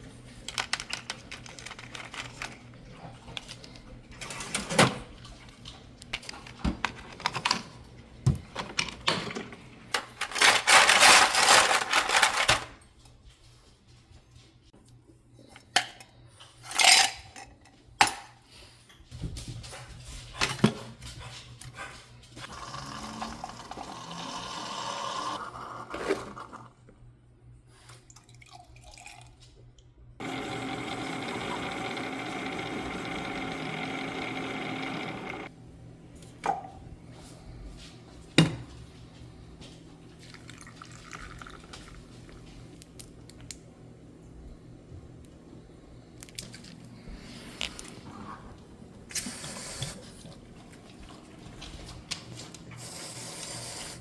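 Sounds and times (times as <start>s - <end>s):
objects clicking and clattering: 0.4s - 7.8s, 8.4s - 13.2s.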